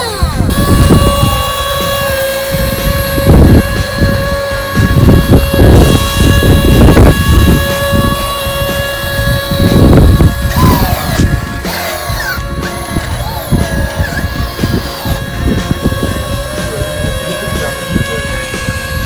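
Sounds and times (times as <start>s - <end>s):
low rumbling thumps: 0.0s - 19.0s
small electric motor whining: 0.0s - 19.0s.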